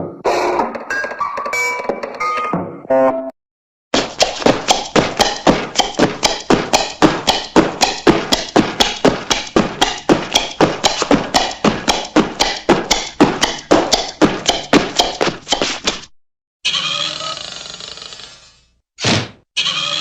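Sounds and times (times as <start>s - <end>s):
rapid sharp cartoon knocks: 4.0s - 16.1s.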